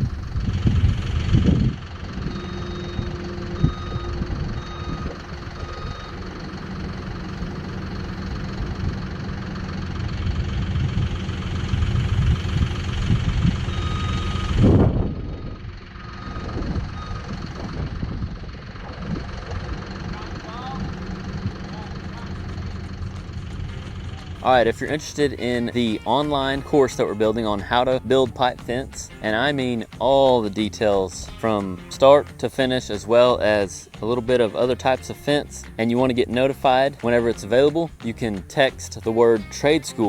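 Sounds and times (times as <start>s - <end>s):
skid steer and tractor engines: 0.0s - 40.0s
backup alarm beeps: 2.1s - 7.0s, 13.7s - 14.6s, 15.3s - 17.6s.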